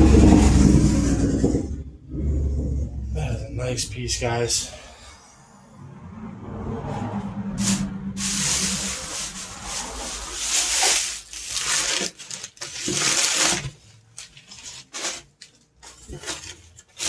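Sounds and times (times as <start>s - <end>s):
handling rustling and rubbing: 7.6s - 17.0s.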